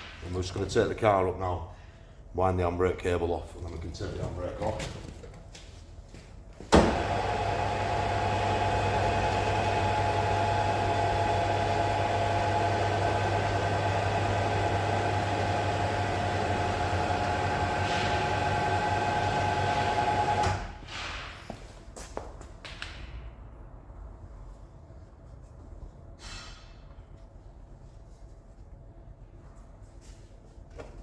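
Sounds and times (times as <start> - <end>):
hydraulic pump motor whining: 6.8 - 20.8.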